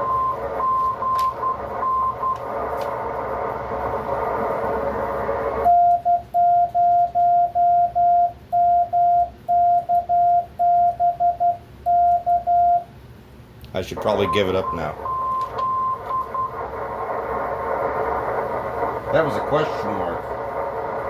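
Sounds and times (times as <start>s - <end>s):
faint morse code signal: 0.0s - 2.4s, 5.6s - 12.9s, 14.0s - 16.7s
morse code sidetone beeps: 0.0s - 2.4s, 5.7s - 12.9s, 14.0s - 16.6s
shortwave receiver hiss: 14.0s - 21.0s.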